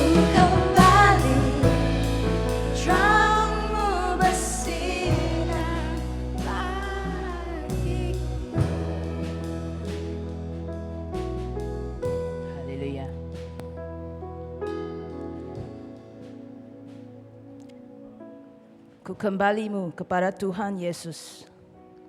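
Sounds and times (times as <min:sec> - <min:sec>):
sung vocals: 0:00.0 - 0:10.6
worship band playing gospel song: 0:00.0 - 0:13.6.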